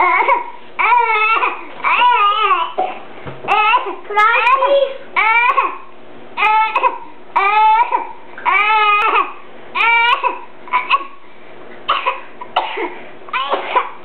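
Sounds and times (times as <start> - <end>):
baby crying: 0.0 - 2.8, 3.5 - 11.1.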